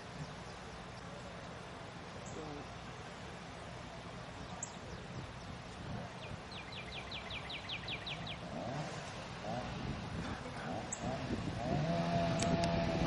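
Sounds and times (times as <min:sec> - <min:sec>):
outdoor background noise: 0:00.0 - 0:13.0
songbird singing downslurred notes: 0:04.0 - 0:08.5, 0:10.9 - 0:11.2.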